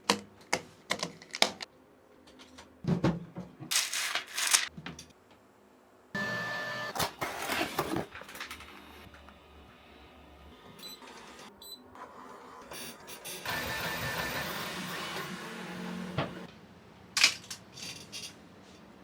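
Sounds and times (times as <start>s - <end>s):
packaging clicks and rustling: 0.5s - 1.7s, 3.7s - 4.7s.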